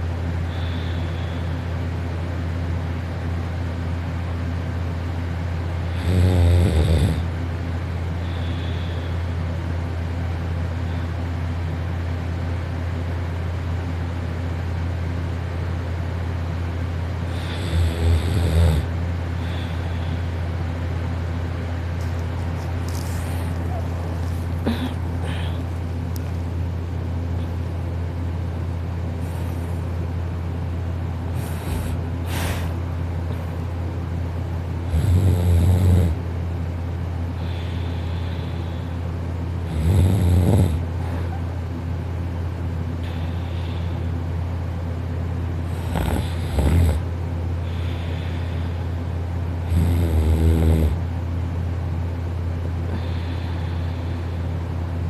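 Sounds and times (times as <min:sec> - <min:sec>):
steady low hum: 0:00.0 - 0:55.0
person snoring: 0:05.9 - 0:07.3, 0:17.3 - 0:19.9, 0:22.9 - 0:25.8, 0:34.9 - 0:36.2, 0:39.6 - 0:40.9, 0:45.7 - 0:47.1, 0:49.7 - 0:51.0.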